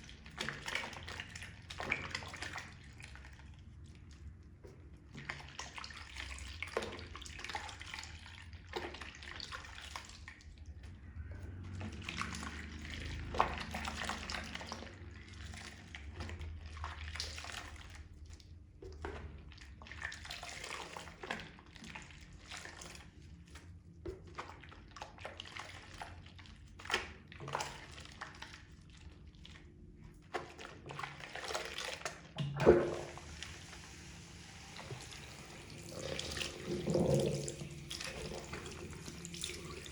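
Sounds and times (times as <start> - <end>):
sponges squishing in water: 0.0 - 39.9
running water: 32.4 - 39.9.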